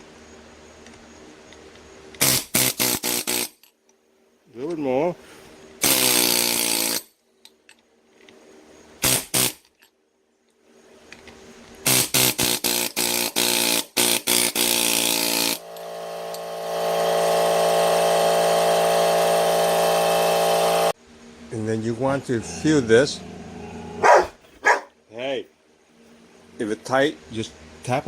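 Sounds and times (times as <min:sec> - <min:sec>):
power tool motor running: 0:05.8 - 0:07.0, 0:11.9 - 0:21.0.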